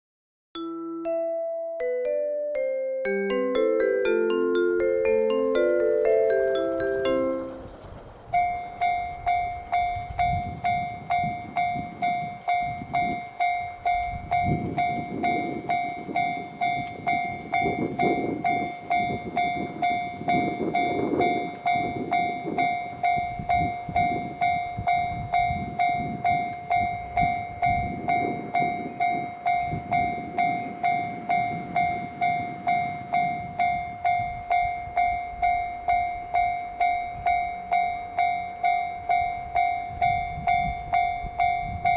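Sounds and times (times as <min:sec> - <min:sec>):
level-crossing warning bell: 0:00.6 - 0:41.9
diesel train rumbling past: 0:03.3 - 0:41.9.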